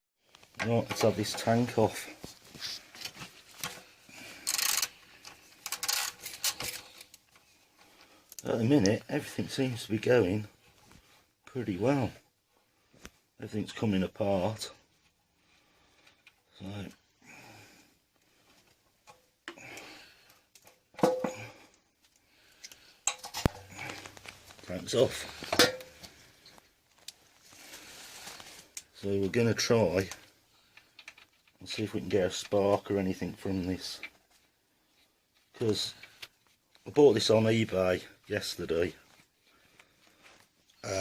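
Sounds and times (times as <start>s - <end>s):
clicks and light knocks of tools: 0.3s - 9.0s, 18.5s - 27.2s, 30.0s - 32.9s.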